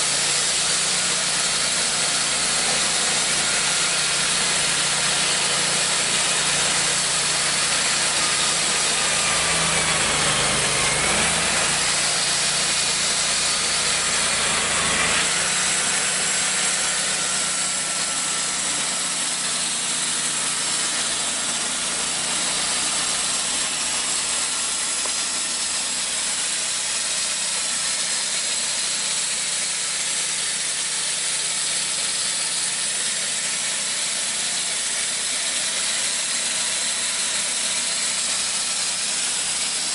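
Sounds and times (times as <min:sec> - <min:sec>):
sawmill gas engine running: 0:00.0 - 0:39.9
steady loud hiss: 0:00.0 - 0:39.9.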